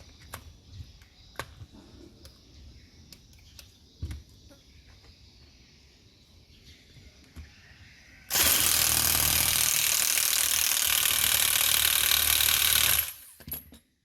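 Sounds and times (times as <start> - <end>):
power tool running: 8.3 - 13.4.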